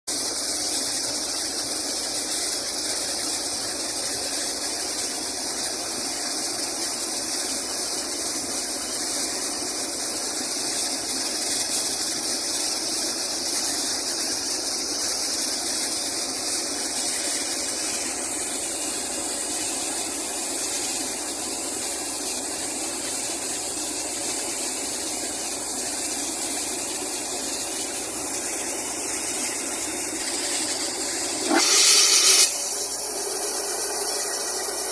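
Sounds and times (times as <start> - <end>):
air and water gushing from borewell: 0.1 - 34.9.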